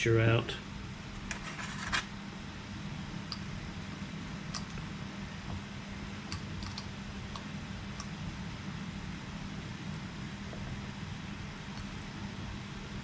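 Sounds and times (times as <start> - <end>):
steady low hum: 0.0 - 13.0
small parts clicking: 6.3 - 6.9.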